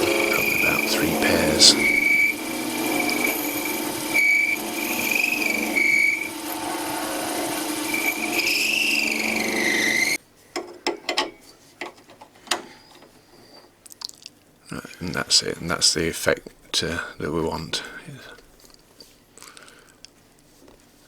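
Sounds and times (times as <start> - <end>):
high squealing whistle of cutting: 0.0 - 10.2
wood lathe motor hum: 0.0 - 10.2.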